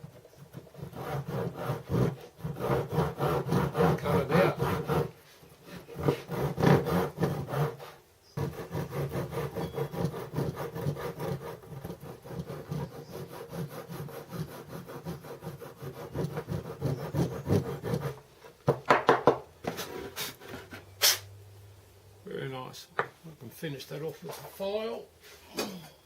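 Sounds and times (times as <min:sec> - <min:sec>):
hand saw cutting wood: 0:00.0 - 0:18.2.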